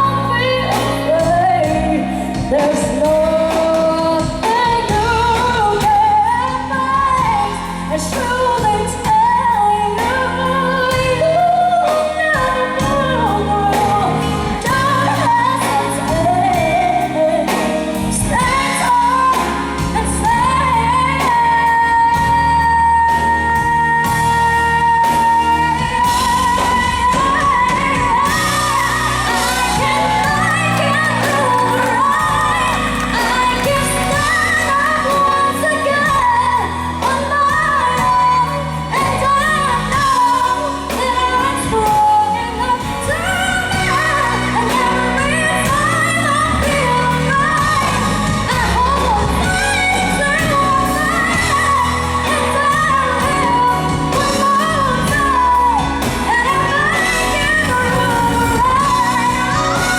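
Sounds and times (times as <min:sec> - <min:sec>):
live band playing power ballad: 0:00.0 - 0:59.9
woman singing melismatic runs: 0:23.7 - 0:59.9.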